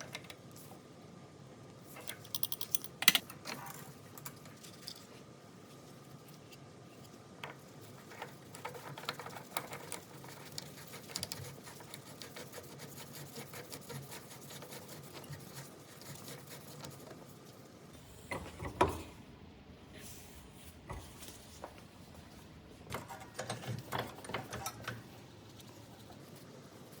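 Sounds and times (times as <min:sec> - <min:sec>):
small metal parts clicking: 0:02.0 - 0:03.3.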